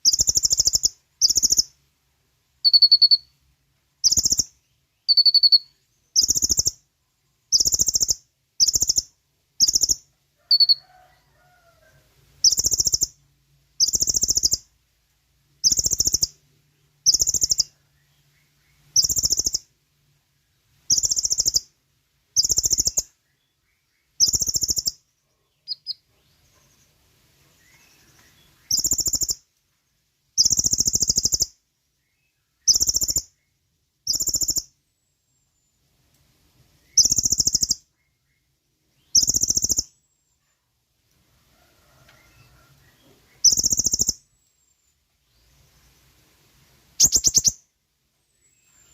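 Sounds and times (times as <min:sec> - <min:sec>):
sunbird buzzy trills: 0:00.0 - 0:01.8, 0:02.6 - 0:03.4, 0:04.0 - 0:06.8, 0:07.4 - 0:10.8, 0:12.4 - 0:13.2, 0:13.8 - 0:14.7, 0:15.6 - 0:19.7, 0:20.8 - 0:26.9, 0:27.6 - 0:29.5, 0:30.4 - 0:35.8, 0:36.8 - 0:40.3, 0:42.3 - 0:46.2, 0:46.9 - 0:48.9.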